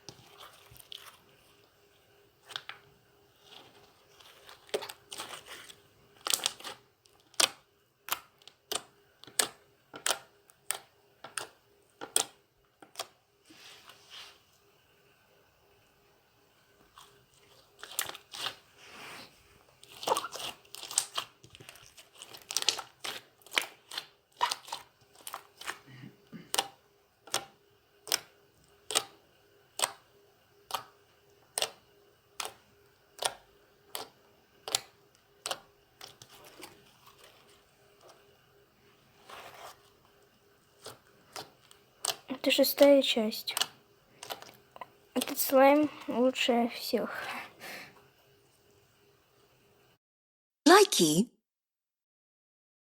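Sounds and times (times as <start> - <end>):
slime popping and crackling: 19.8 - 25.8.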